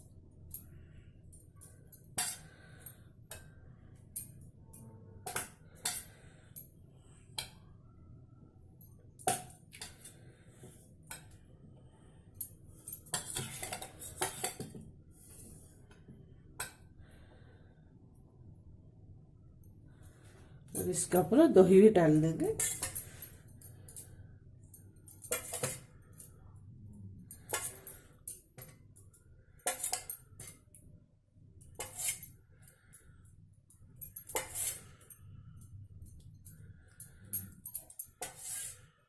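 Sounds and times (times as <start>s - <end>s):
utensils clinking against dishes: 1.6s - 2.6s, 12.8s - 14.8s, 22.3s - 24.1s, 25.2s - 26.3s, 27.3s - 29.1s, 29.7s - 30.6s, 34.0s - 35.2s, 36.9s - 38.8s.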